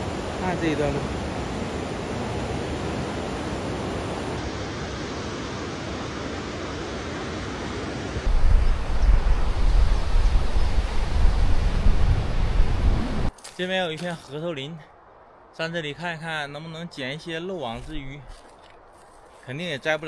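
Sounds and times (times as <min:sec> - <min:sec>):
low wind buffeting: 0:00.0 - 0:19.4
wind noise on microphone: 0:08.2 - 0:13.3.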